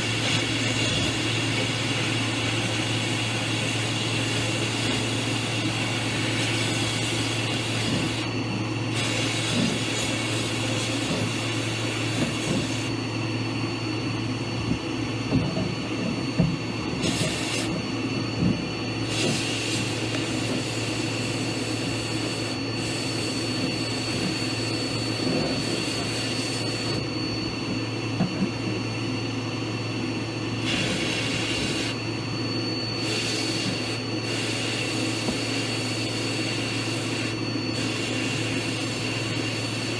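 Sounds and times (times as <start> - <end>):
power tool motor humming: 16.8 - 17.8
hiss: 33.0 - 39.9.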